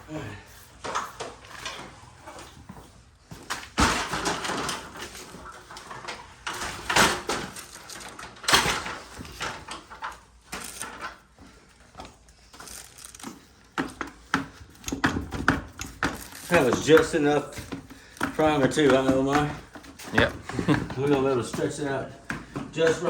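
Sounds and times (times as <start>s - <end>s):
paint roller swishing: 10.6s - 22.2s.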